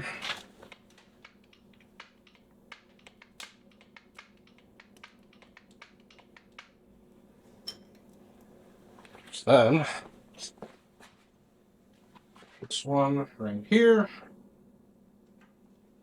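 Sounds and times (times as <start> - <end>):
steady low hum: 0.0 - 16.0
grease gun clicks and taps: 0.6 - 6.8.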